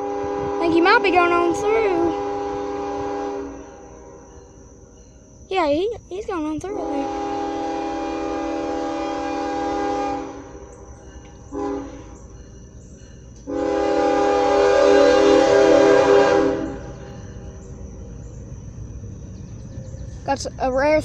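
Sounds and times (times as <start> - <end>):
locomotive air horn: 0.0 - 4.6, 6.7 - 10.8, 11.5 - 12.2, 13.4 - 17.1.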